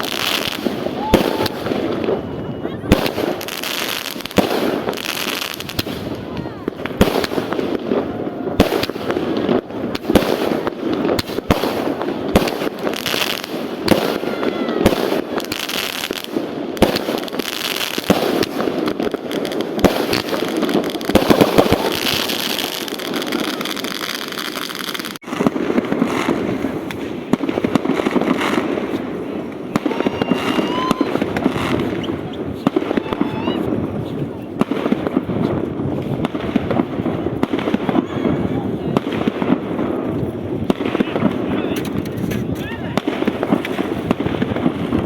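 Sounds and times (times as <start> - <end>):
fireworks crackling: 0.0 - 45.0
fireworks whistling: 0.0 - 45.0.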